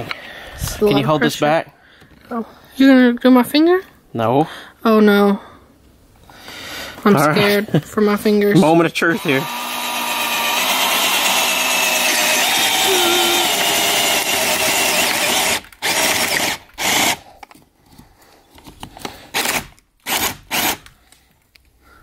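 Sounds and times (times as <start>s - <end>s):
power drill boring through wood: 9.0s - 17.2s, 19.3s - 20.9s.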